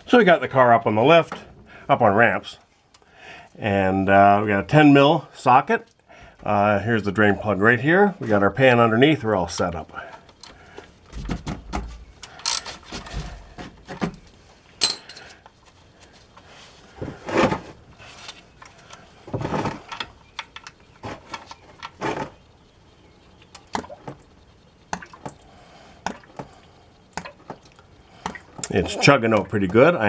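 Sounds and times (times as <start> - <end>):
handling noises: 9.9 - 22.7
metal wrench clinks and knocks: 12.4 - 12.7, 14.8 - 15.3.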